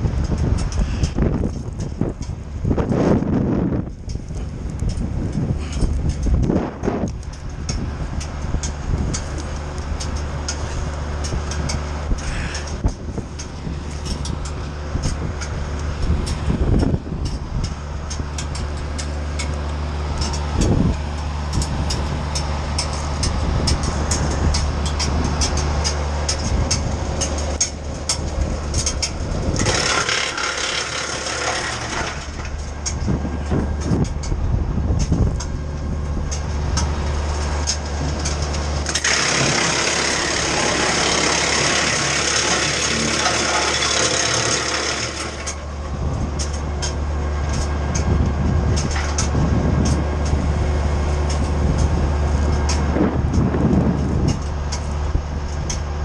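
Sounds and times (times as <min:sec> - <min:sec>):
low engine drone: 0:00.0 - 0:56.0
wood chipper shredding branches: 0:00.0 - 0:56.0
wood cracking: 0:21.9 - 0:34.3, 0:36.4 - 0:45.7.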